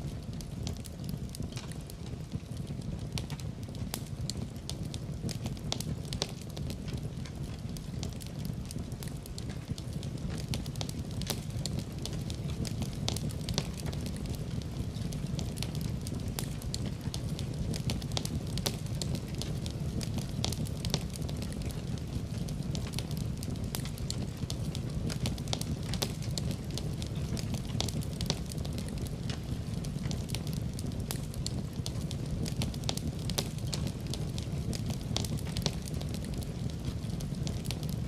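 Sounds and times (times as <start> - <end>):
wood fire crackling and popping: 0.0 - 38.0.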